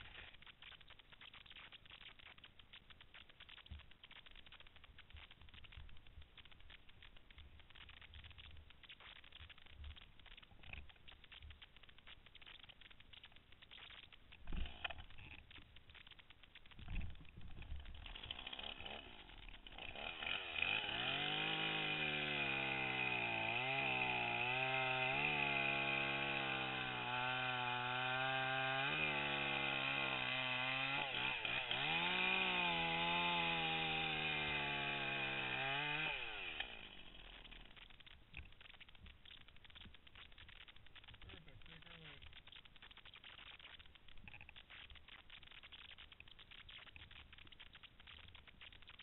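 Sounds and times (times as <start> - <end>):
chainsaw engine revving: 17.5 - 37.9.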